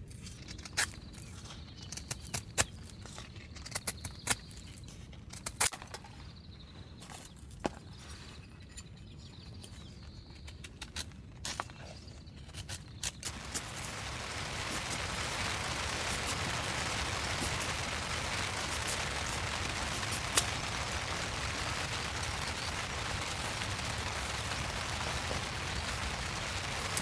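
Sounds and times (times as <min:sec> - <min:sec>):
steady rain hiss: 0:13.3 - 0:27.0.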